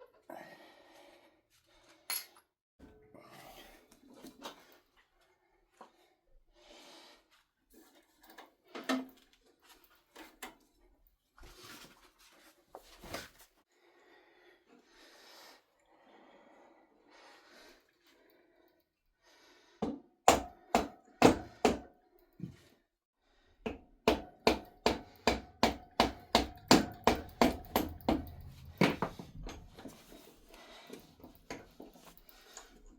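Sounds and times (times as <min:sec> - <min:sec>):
tools clinking and knocking: 0:02.1 - 0:02.4, 0:23.7 - 0:32.9.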